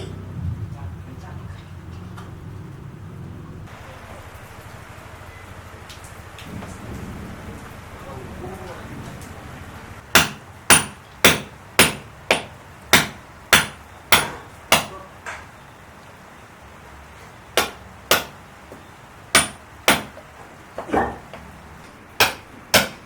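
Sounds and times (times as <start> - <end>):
hammer blows: 10.1 - 15.5, 17.6 - 21.5, 22.2 - 23.0.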